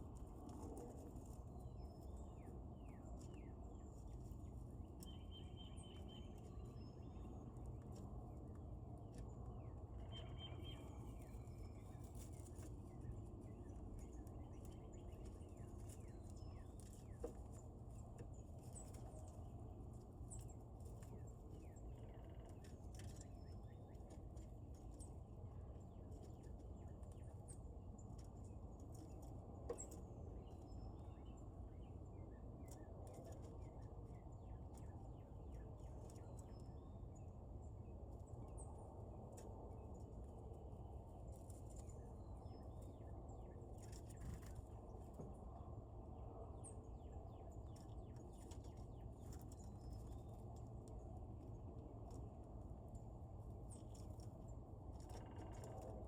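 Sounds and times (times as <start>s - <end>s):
low background rumble: 0.0s - 56.0s
faint bird chirps: 0.6s - 7.6s, 9.7s - 17.6s, 53.8s - 56.0s.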